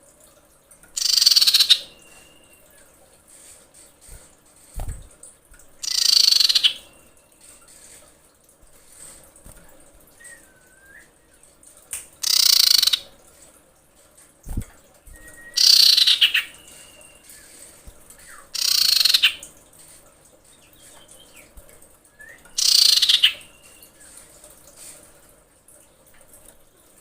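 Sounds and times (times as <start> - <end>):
harsh rasping bird calls: 1.0 - 2.6, 5.8 - 7.1, 12.2 - 13.1, 15.6 - 17.6, 18.2 - 19.5, 22.5 - 23.9
faint short whistled notes: 10.2 - 11.3, 15.1 - 15.6, 22.1 - 22.6.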